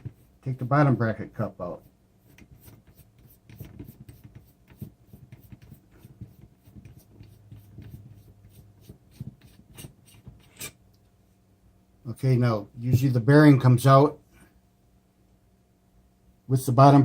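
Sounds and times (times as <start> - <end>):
tool clicking and metal rubbing: 8.9 - 10.8.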